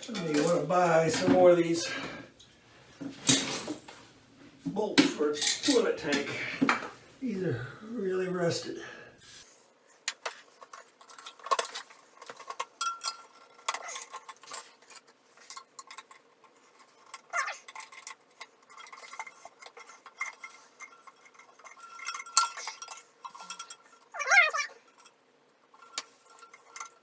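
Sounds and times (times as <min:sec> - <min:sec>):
metal tools clinking on bolts: 0:00.0 - 0:02.0, 0:10.1 - 0:27.0.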